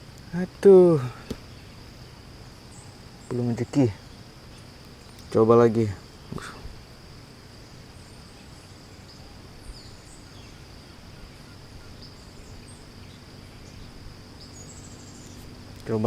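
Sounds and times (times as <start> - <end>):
high-pitched insect drone: 0.0 - 16.0
faint tap: 1.2 - 1.4.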